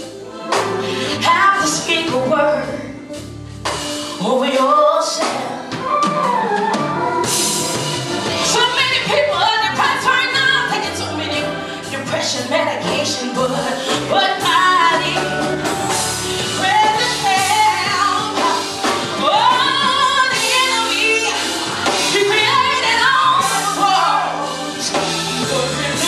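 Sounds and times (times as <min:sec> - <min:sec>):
gospel singing with band: 0:00.0 - 0:26.0
bass line: 0:05.3 - 0:26.0.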